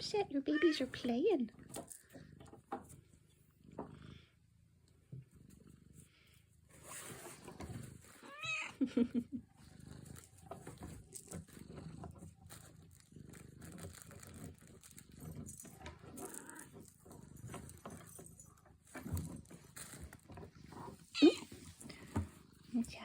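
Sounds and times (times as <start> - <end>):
cat growling: 8.1 - 17.6
cat wavering cry: 8.3 - 8.8, 21.2 - 21.5.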